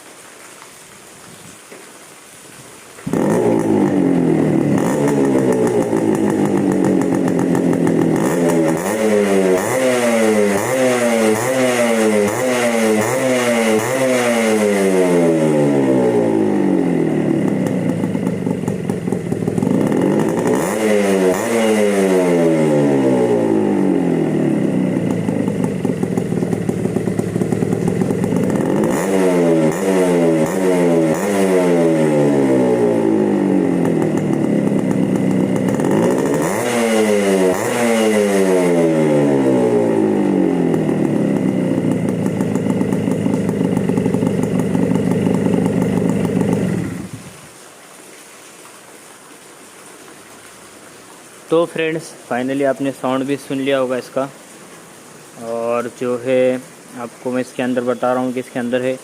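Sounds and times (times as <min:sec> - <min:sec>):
two-stroke engine revving: 0:03.0 - 0:47.4.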